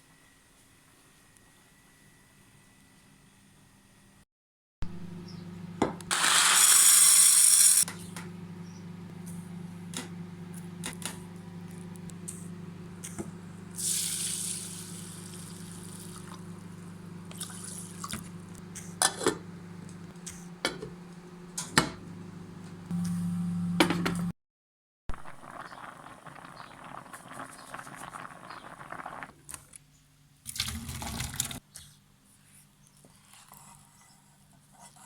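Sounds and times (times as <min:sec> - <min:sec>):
tap water running: 0:05.9 - 0:07.9, 0:13.2 - 0:20.1, 0:30.5 - 0:31.6
steady low hum: 0:07.9 - 0:24.3.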